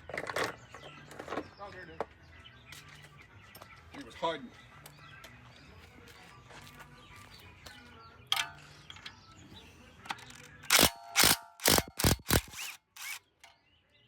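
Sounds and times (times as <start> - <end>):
socket ratchet clicking: 10.3 - 13.2.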